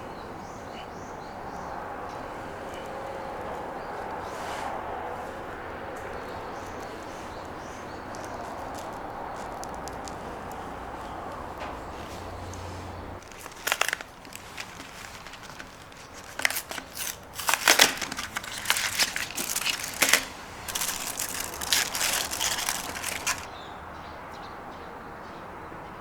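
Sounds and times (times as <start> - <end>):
wrapper crinkling and tearing: 6.2 - 23.5.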